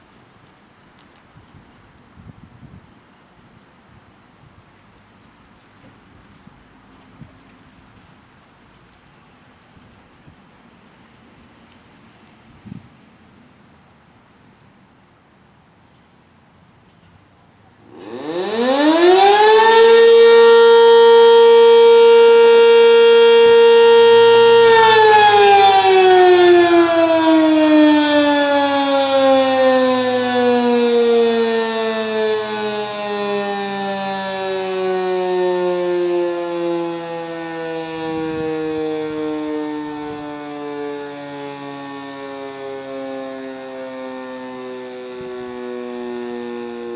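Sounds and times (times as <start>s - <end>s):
electromechanical siren winding: 17.9s - 27.2s.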